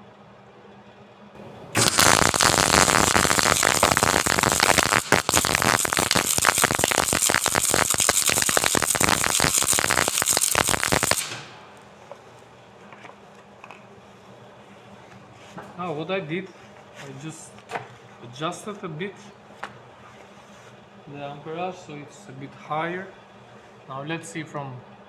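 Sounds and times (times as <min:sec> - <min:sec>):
welding arc crackling: 0:01.7 - 0:12.4.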